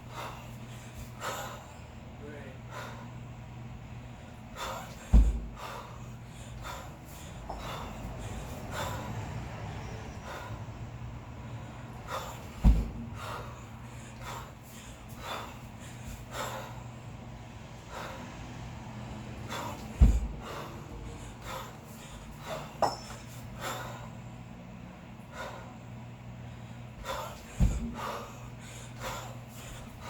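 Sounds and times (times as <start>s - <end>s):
person breathing sharply: 4.3s - 24.2s, 25.2s - 30.0s
kettlebell heavy thud: 4.9s - 5.8s, 7.4s - 8.0s, 12.3s - 13.5s, 19.6s - 20.9s, 22.4s - 23.3s, 27.4s - 28.4s.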